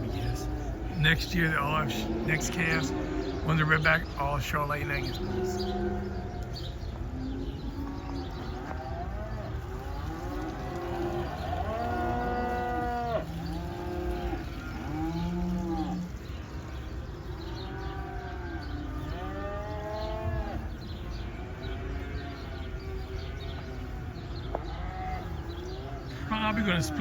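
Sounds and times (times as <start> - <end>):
cows mooing: 0.0 - 27.0.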